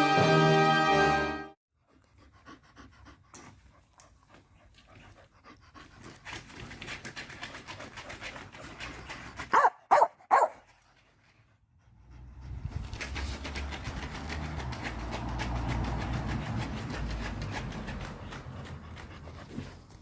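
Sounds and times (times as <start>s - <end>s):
dog panting: 1.8s - 20.0s
dog barking: 9.5s - 10.7s.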